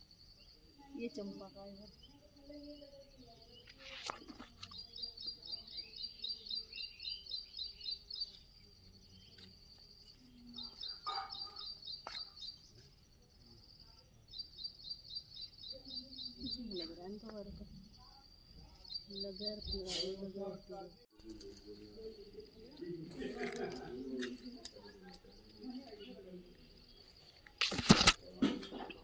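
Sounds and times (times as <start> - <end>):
faint background noise: 0.0 - 29.0
small bird chirping: 0.1 - 20.4.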